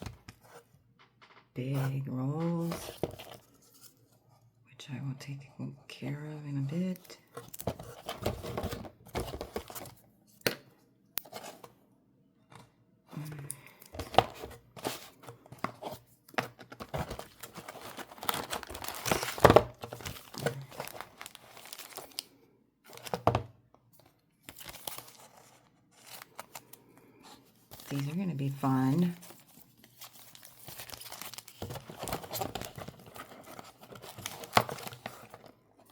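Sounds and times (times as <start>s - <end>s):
packaging crinkling and tearing: 16.7s - 23.3s, 24.4s - 26.9s, 27.7s - 35.9s.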